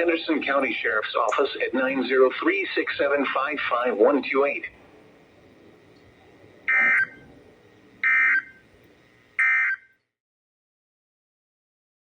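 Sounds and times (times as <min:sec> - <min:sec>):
digital data tone bursts: 0:06.6 - 0:07.3, 0:08.0 - 0:08.6, 0:09.4 - 0:09.9.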